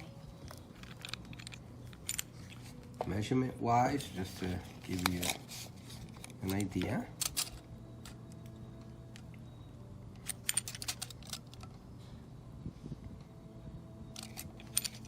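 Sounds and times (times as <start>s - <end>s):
padlock and tool clicking: 0.0s - 3.0s, 4.8s - 12.0s, 14.0s - 15.0s.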